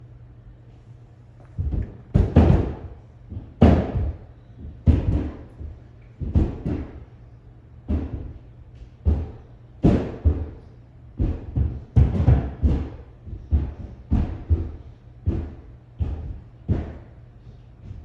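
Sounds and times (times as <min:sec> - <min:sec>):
booming knocks through ceiling: 0:01.4 - 0:07.1, 0:07.8 - 0:08.4, 0:09.0 - 0:17.1.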